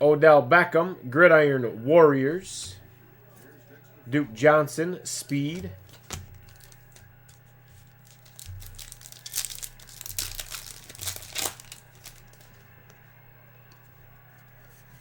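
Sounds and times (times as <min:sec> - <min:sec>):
card pack wrapper crinkling: 0:05.3 - 0:12.7.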